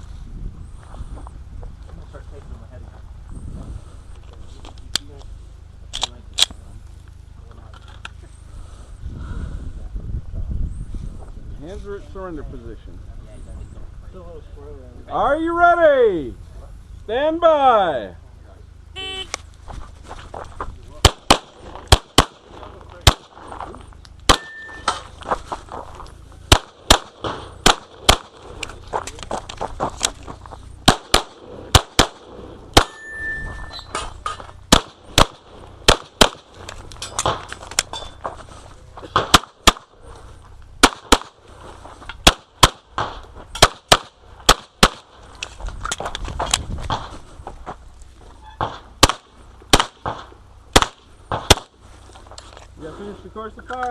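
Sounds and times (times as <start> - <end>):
pistol shots: 21.0 - 23.4, 24.3 - 25.0, 26.5 - 28.6, 30.8 - 33.4, 34.7 - 37.9, 39.1 - 40.0, 40.8 - 41.4, 42.2 - 45.2, 48.6 - 51.8.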